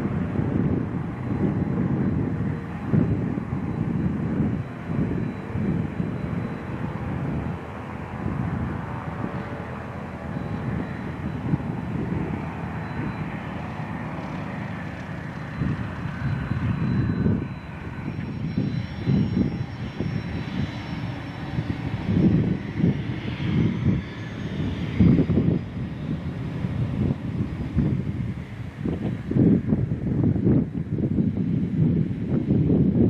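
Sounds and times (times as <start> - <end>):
faint pitched drone: 0.0 - 29.0
airplane engine running: 0.0 - 33.0
wind buffeting microphone: 0.0 - 33.0.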